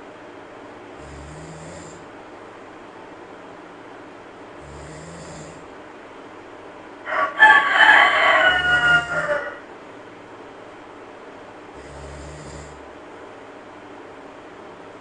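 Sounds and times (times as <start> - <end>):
monkey snoring: 1.0 - 2.1, 4.6 - 5.7, 11.8 - 12.9
loud animal call: 7.1 - 9.7.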